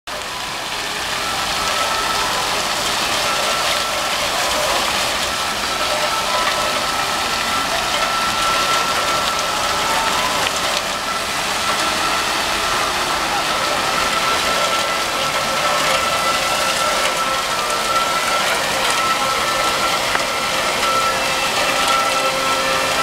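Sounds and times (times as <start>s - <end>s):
fountain water splashing: 0.1s - 23.0s.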